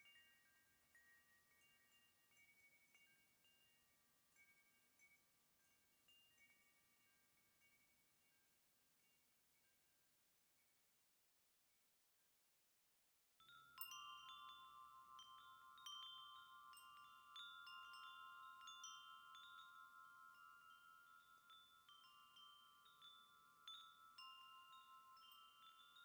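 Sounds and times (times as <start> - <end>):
wind chime ringing: 13.4 - 26.0.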